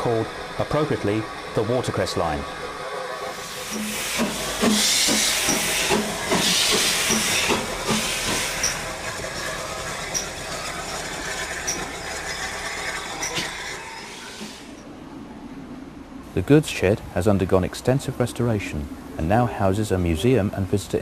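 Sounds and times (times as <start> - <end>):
steam hissing: 0.0 - 14.9
steam locomotive chuffing: 0.0 - 14.9.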